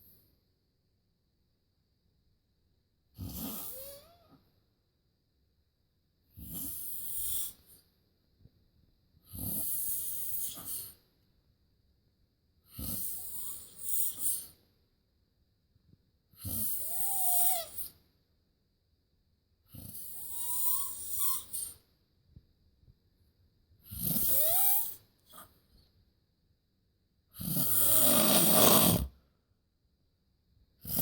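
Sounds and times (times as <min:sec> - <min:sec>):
loud rasping snoring: 0:03.2 - 0:04.2, 0:06.3 - 0:07.6, 0:09.2 - 0:10.9, 0:12.7 - 0:14.5, 0:16.4 - 0:17.9, 0:19.7 - 0:21.6, 0:23.8 - 0:25.4, 0:27.3 - 0:29.2, 0:30.8 - 0:31.0.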